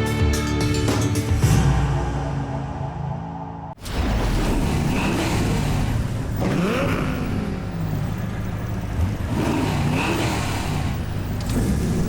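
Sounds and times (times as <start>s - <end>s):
sports car engine revving: 4.4s - 12.0s.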